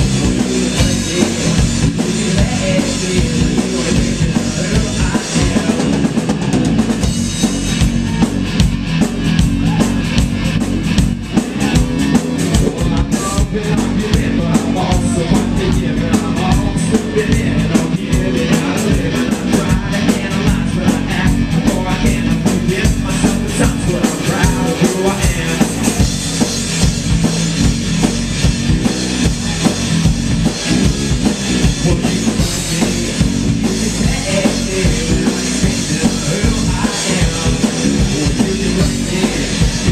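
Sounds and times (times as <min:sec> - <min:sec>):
person singing: 0:00.0 - 0:06.8, 0:11.4 - 0:26.1, 0:31.6 - 0:39.9
drum kit beating: 0:00.0 - 0:39.9
rock band playing live: 0:00.0 - 0:39.9.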